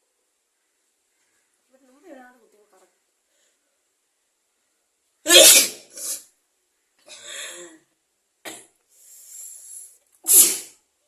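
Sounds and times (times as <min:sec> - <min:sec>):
person sneezing: 0:05.3 - 0:06.3, 0:10.2 - 0:10.8
breathy sounds: 0:07.1 - 0:07.9.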